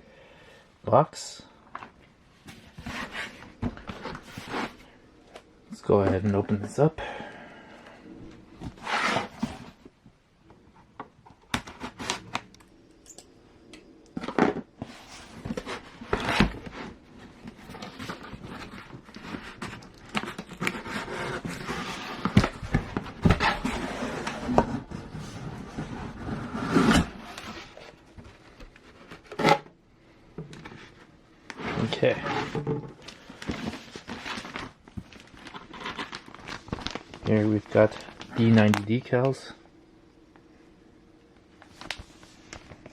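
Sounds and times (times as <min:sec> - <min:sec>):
packaging rustling: 0:14.2 - 0:26.3, 0:33.0 - 0:38.9.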